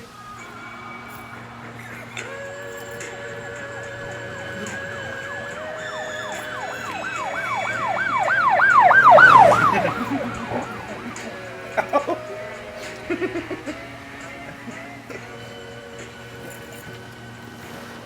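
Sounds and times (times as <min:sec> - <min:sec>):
siren in yelp mode: 0:02.9 - 0:12.2.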